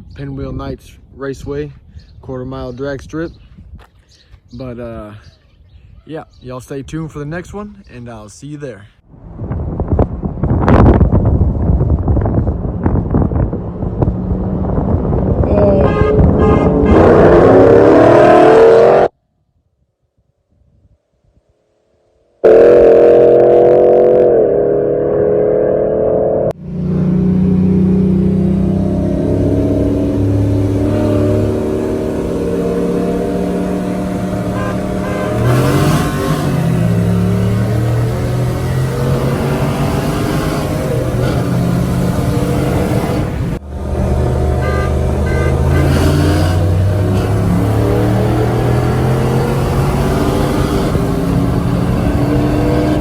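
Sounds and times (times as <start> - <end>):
engine under hard throttle: 10.7 - 19.1, 22.4 - 53.0
low engine drone: 22.4 - 35.8.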